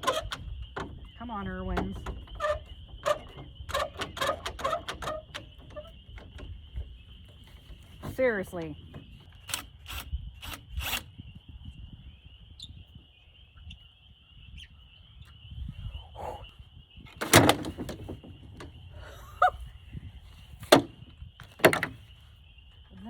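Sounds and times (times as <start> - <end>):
hand tools clicking on hinge: 1.8 - 6.3
metal clatter: 17.2 - 18.7.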